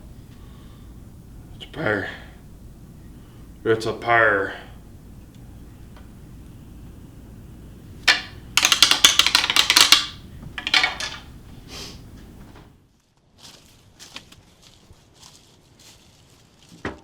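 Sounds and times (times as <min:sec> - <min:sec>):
antlers rattling together: 0:08.0 - 0:11.3.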